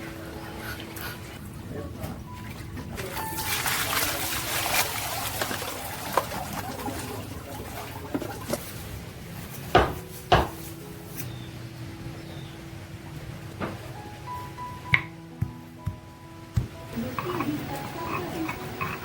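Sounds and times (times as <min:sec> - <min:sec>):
sharp loud knocks: 0:09.8 - 0:10.6.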